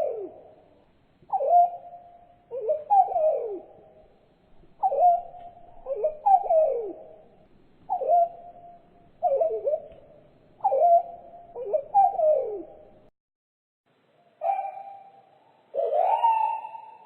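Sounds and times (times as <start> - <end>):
swooping bird call notes: 14.4 - 17.0.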